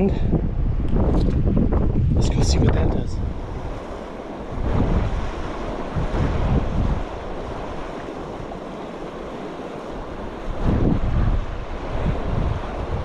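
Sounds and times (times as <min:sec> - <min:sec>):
wind buffeting microphone: 0:00.0 - 0:13.0
flowing water: 0:03.2 - 0:13.0.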